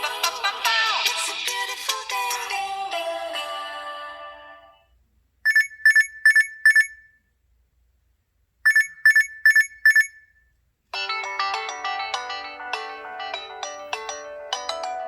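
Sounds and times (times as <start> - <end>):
phone alarm quick high beeps: 5.5 - 7.2, 8.7 - 10.3
melodic phone tone: 11.0 - 15.0.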